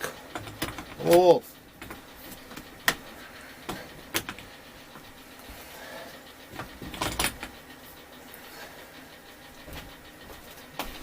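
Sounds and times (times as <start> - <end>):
tools and parts clicking: 0.0 - 4.5, 6.6 - 7.6.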